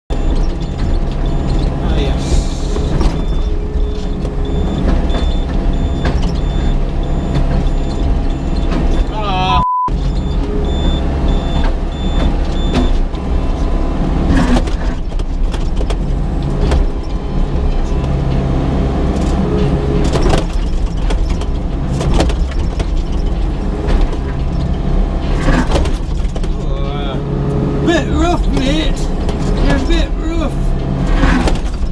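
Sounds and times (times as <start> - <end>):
excavator diesel engine running: 0.1 - 31.9
short high beeps: 9.5 - 12.8.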